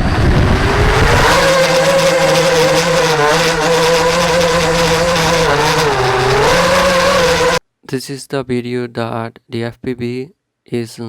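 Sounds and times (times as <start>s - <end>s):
drone motors whining: 0.0s - 7.6s.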